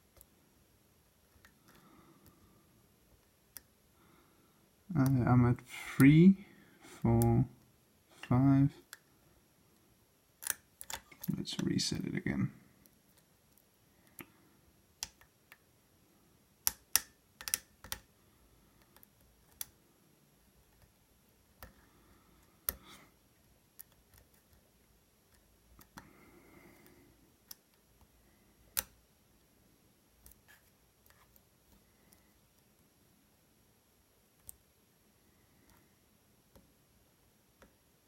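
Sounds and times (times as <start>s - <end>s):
metallic lock picking clicks: 10.4s - 11.3s, 16.6s - 18.1s.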